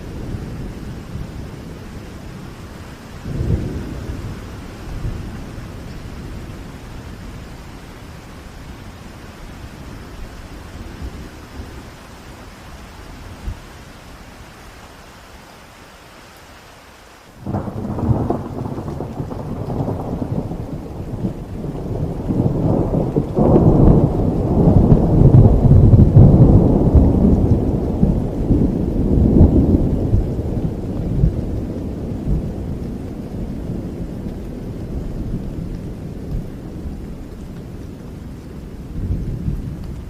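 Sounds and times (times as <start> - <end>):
rolling thunder: 0.0 - 7.6, 17.4 - 40.0
heavy rain: 0.0 - 40.0.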